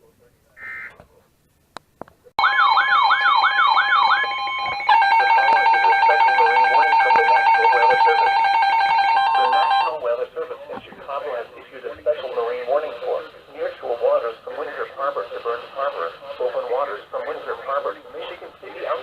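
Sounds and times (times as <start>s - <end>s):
weather radio alarm tone: 0.6s - 1.0s, 2.4s - 11.4s.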